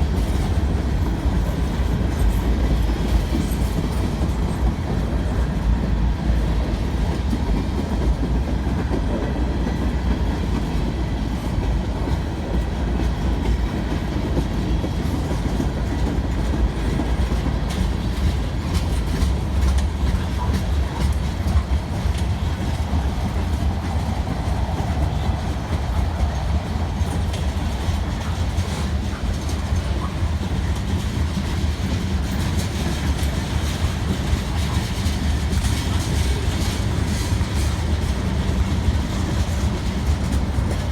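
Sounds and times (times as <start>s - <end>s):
train wheels rumbling on rail: 0.0s - 40.9s
wheels clattering over rail joints: 12.1s - 40.9s.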